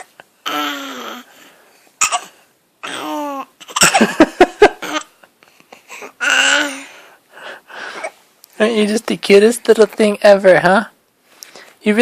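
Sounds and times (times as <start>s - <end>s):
baby cooing: 0.0s - 1.4s, 2.0s - 3.9s, 5.8s - 6.9s
baby hiccuping: 2.0s - 4.0s.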